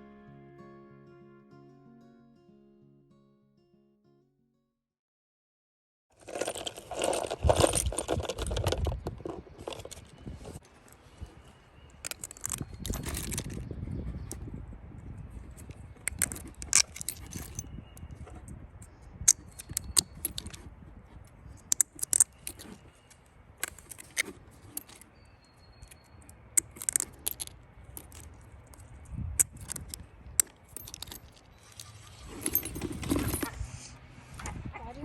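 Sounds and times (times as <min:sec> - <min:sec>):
sharp metallic clinks and jingles: 0:11.8 - 0:14.4, 0:15.4 - 0:18.2, 0:18.9 - 0:20.7, 0:21.4 - 0:33.6.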